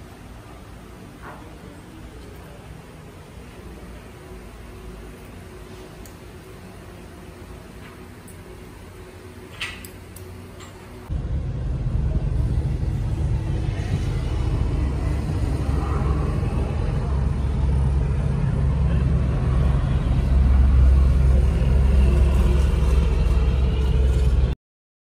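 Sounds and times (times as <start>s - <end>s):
heavy engine rumbling: 10.6s - 24.6s.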